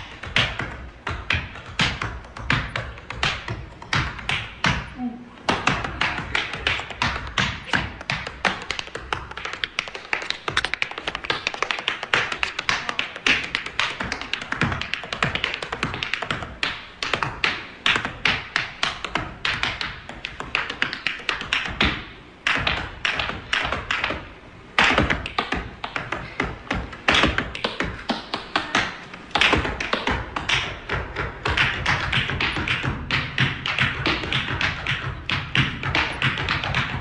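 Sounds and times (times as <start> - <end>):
tap shoes on hard floor: 5.5 - 16.5, 24.8 - 37.0.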